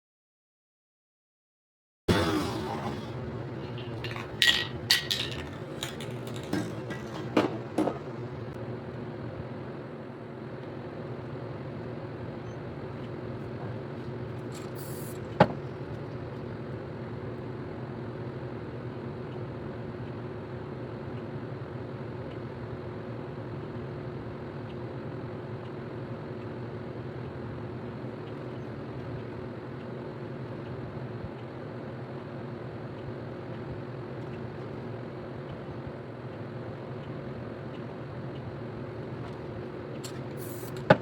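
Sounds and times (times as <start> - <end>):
mechanical hum: 2.1 - 41.0.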